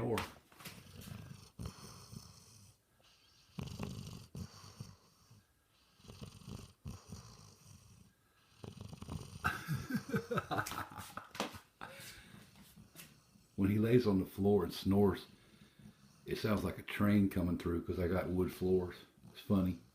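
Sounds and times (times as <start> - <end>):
pet snoring: 0.7 - 9.5.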